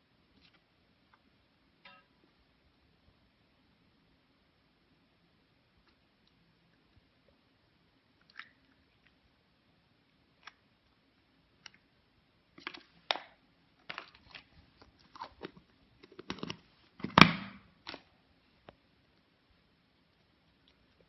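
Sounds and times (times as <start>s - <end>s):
wrapper crinkling and crackling: 12.6s - 16.6s.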